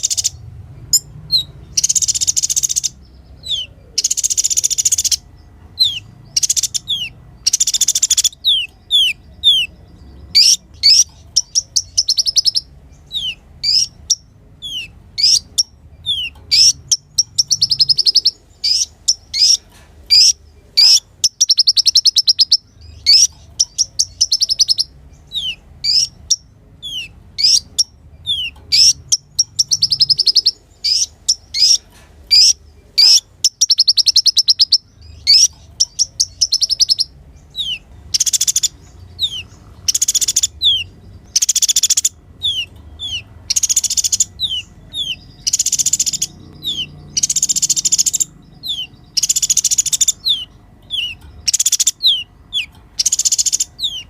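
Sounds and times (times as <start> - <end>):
sunbird chirps and buzzy trills: 0.0 - 54.0.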